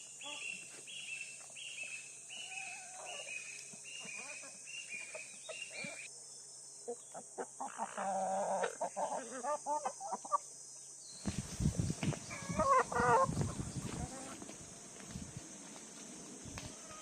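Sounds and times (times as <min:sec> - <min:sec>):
chickens clucking: 0:02.4 - 0:06.0, 0:06.9 - 0:10.4, 0:12.0 - 0:14.6.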